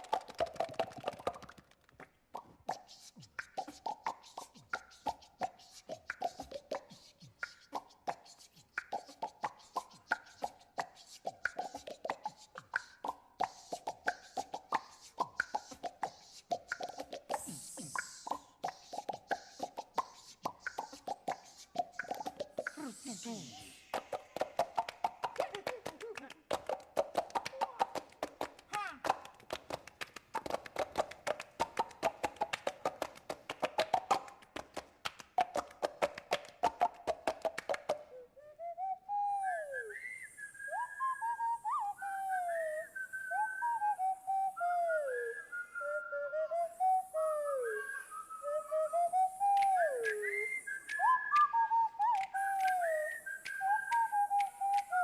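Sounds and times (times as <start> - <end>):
person making mouth clicks and pops: 0.0 - 38.2.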